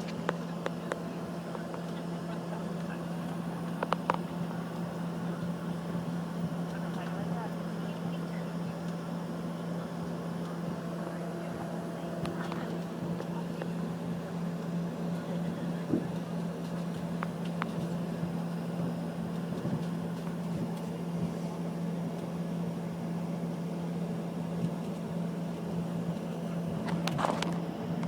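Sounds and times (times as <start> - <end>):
airliner cabin hum: 0.0 - 28.0.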